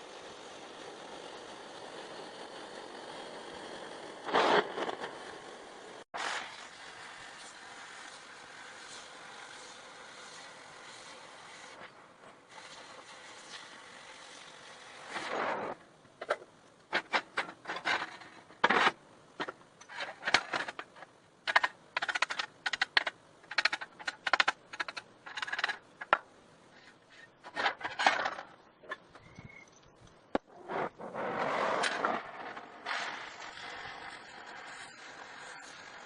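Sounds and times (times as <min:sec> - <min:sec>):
steady background hiss: 0:00.0 - 0:36.0
steel parts clinking and scraping: 0:16.2 - 0:26.2, 0:26.9 - 0:29.9.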